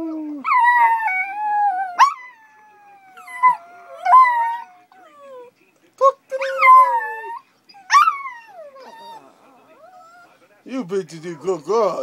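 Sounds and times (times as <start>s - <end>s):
dogs howling: 0.4s - 5.5s, 6.5s - 10.3s
dog yelps: 6.6s - 9.2s.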